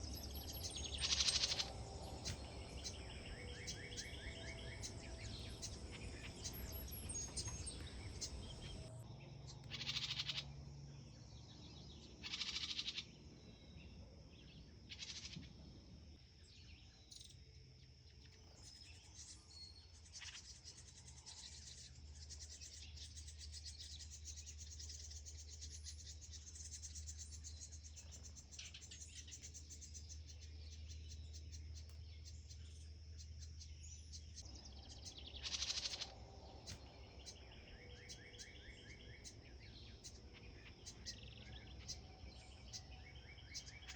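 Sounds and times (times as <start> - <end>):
wren and nestling chirps: 0.0 - 10.6, 11.5 - 13.8, 18.4 - 43.9
high insect drone: 0.6 - 7.2, 34.8 - 37.3.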